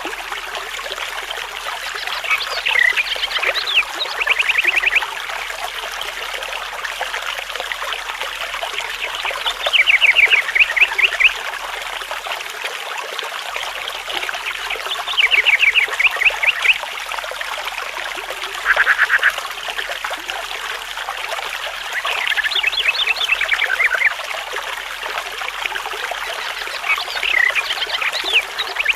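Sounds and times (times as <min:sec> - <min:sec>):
water trickling: 0:00.0 - 0:28.9
bird trilling: 0:18.6 - 0:19.4.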